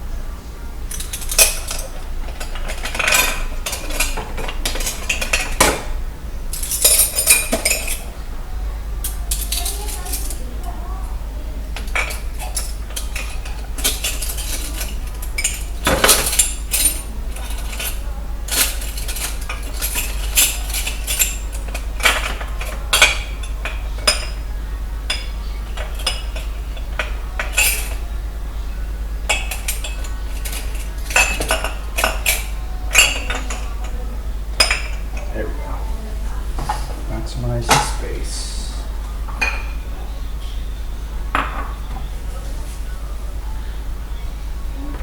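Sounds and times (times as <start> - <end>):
steady low hum: 0.0 - 45.0
dishes and cutlery clinking: 0.9 - 8.1, 9.0 - 10.8, 11.7 - 28.1, 29.3 - 35.4, 36.5 - 38.1, 39.2 - 40.6.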